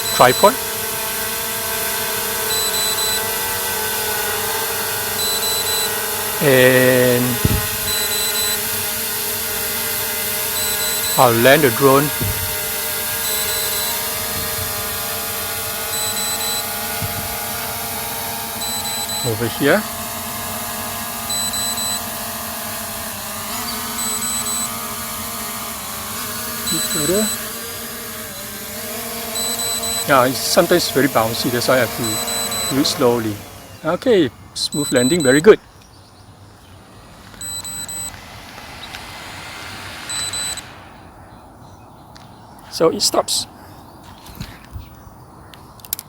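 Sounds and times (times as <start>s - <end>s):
short high-pitched beeps: 0.0s - 0.6s, 2.5s - 3.3s, 5.2s - 8.7s, 10.5s - 12.4s, 13.2s - 14.8s, 15.8s - 17.2s, 18.5s - 19.6s, 21.3s - 22.1s, 23.7s - 24.8s, 26.6s - 27.5s, 29.4s - 33.3s, 34.6s - 35.6s, 37.4s - 38.2s, 40.1s - 40.8s
drone propellers humming: 0.0s - 35.6s, 36.4s - 41.8s.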